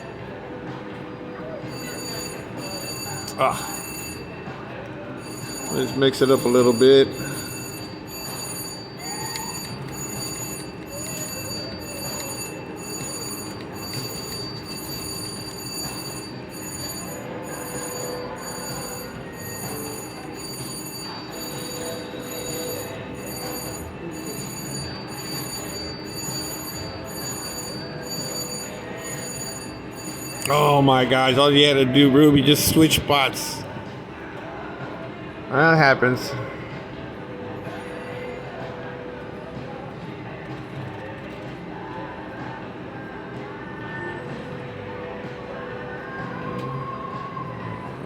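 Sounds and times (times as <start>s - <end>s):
continuous murmur: 0.0s - 48.0s
slot machines ringing and chiming: 0.9s - 33.6s
steady high tones: 1.5s - 33.6s.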